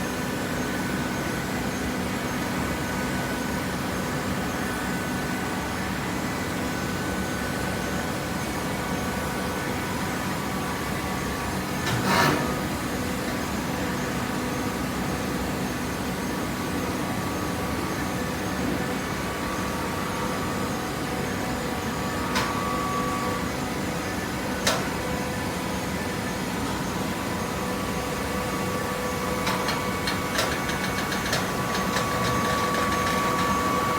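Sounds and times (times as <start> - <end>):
baling machine humming: 17.9 - 33.9.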